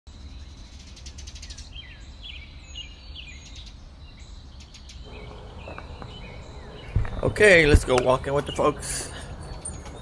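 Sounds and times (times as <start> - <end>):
birds chirping: 0.1 - 10.0
low steady rumble: 5.1 - 8.5.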